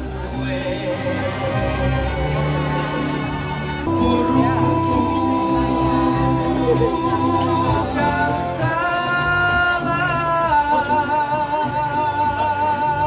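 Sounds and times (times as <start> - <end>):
person singing: 0.0 - 3.2, 3.8 - 13.0
band playing: 0.0 - 13.0.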